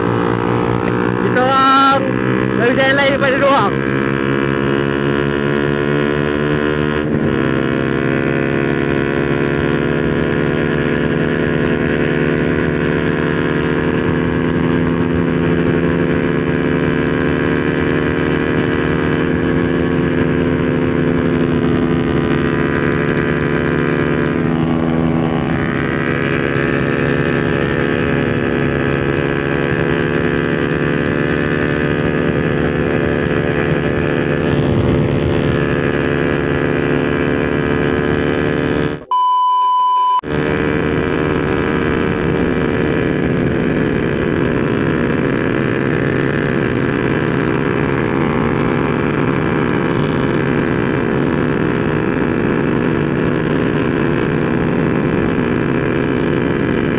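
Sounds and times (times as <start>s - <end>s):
motorcycle engine running: 0.0s - 39.1s, 40.2s - 56.9s.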